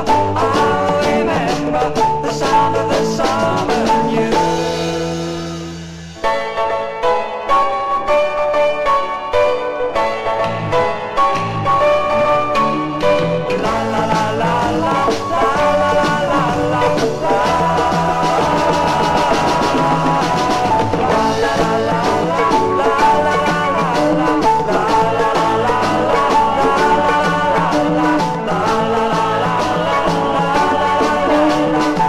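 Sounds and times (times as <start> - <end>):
pop music from vinyl record: 0.0 - 5.7, 13.0 - 32.0.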